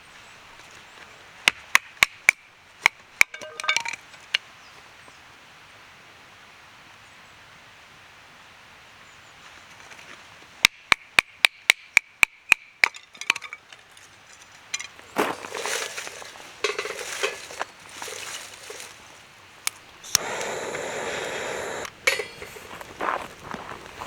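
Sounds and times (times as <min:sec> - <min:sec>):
hammer striking metal: 0:03.3 - 0:04.0
rustling handling sounds: 0:13.2 - 0:20.6.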